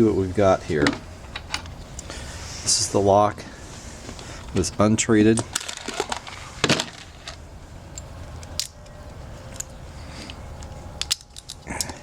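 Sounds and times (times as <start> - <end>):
key scraping in padlock: 10.6 - 11.7.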